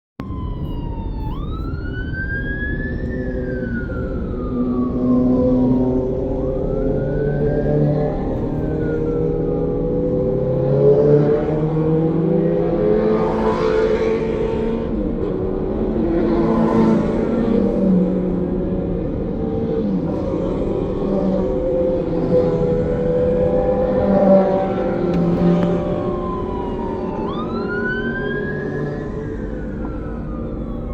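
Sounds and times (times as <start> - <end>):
traffic hum: 0.2 - 30.9
vehicle siren wailing: 0.2 - 30.9
vehicles rushing past: 2.8 - 30.9.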